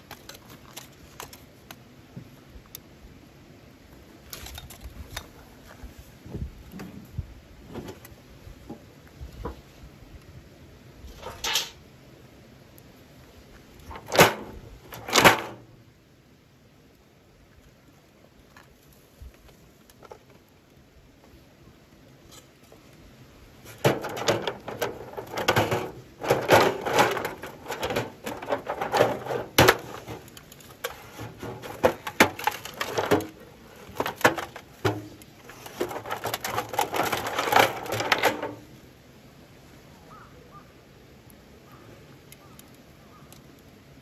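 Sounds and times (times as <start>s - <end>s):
hard objects clattering: 23.7s - 38.6s.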